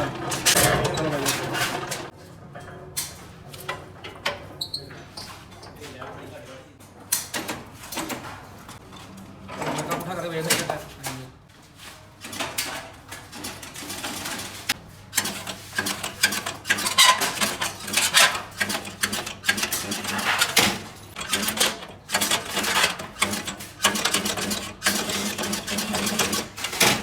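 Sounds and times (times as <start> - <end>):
stove parts clattering: 0.0 - 4.6, 12.2 - 27.0.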